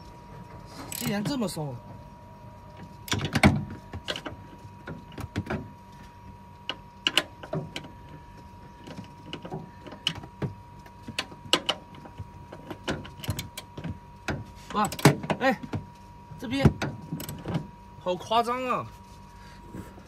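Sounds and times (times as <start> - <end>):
hand wrench clicking and clanking: 0.9 - 1.3.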